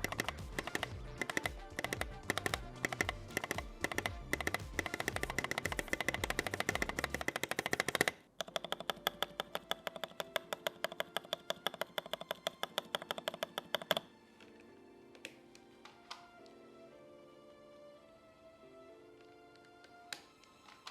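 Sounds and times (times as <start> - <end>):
fast typing on mechanical keyboard: 0.0 - 14.0.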